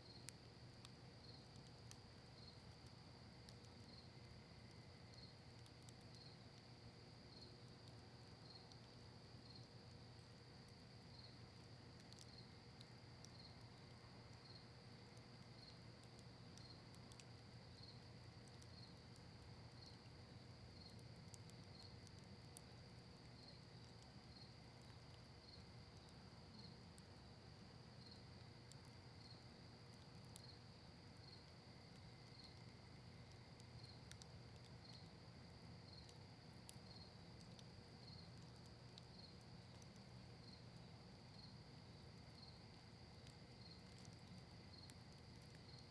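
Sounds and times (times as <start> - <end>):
campfire crackling: 0.1 - 45.9.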